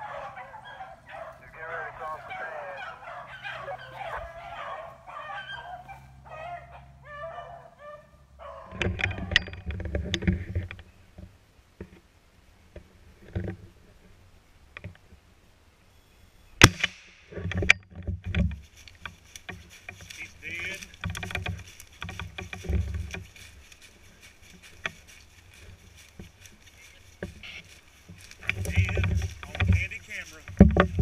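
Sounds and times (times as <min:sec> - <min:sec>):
hounds baying: 0:00.0 - 0:09.4, 0:20.0 - 0:31.0
rustling and handling noise: 0:17.3 - 0:31.0.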